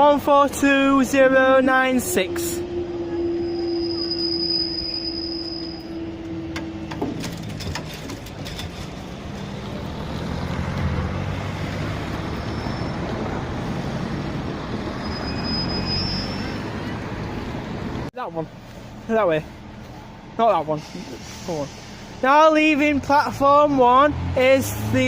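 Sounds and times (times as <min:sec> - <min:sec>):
diesel engines running: 0:00.0 - 0:25.0
steady squeal: 0:02.2 - 0:09.0, 0:12.0 - 0:17.0.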